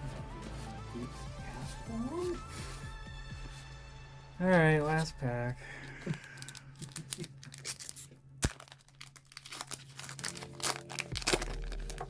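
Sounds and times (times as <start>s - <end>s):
foil wrapper tearing and crinkling: 5.9s - 12.0s.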